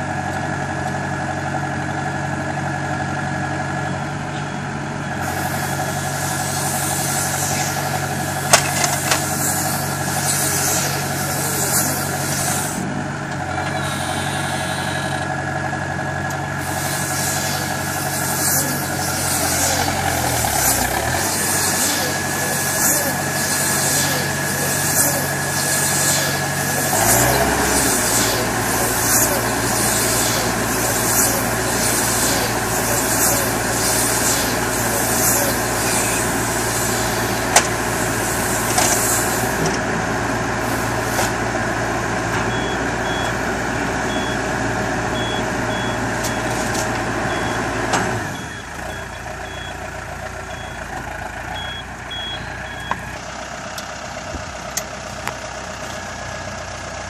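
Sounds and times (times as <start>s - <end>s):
engine humming: 0.0s - 57.0s
rhythmic swishing: 5.3s - 12.8s, 16.7s - 39.6s
short high beeps: 51.6s - 53.0s.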